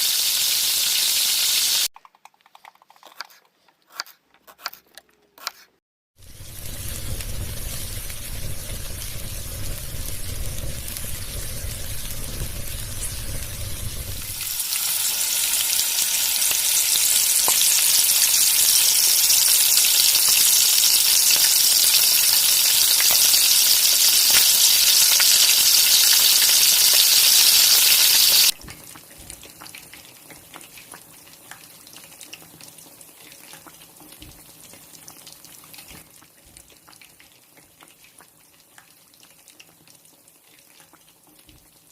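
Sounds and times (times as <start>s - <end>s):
food sizzling in hot oil: 0.0s - 1.9s, 6.2s - 41.8s
low rumble: 6.3s - 14.4s.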